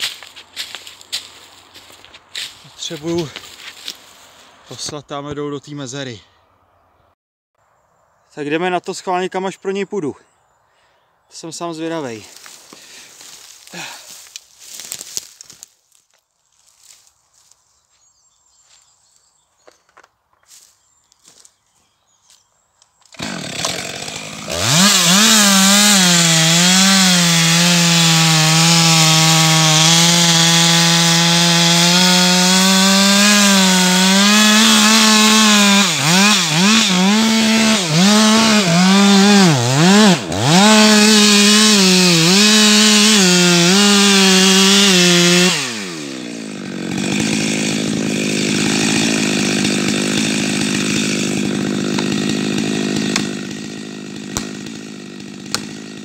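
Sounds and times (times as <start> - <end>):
chainsaw cutting tree trunk: 23.1 - 56.0.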